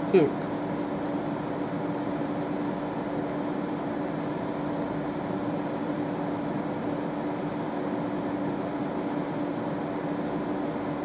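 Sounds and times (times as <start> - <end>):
steady hum with constant tone: 0.0 - 11.0.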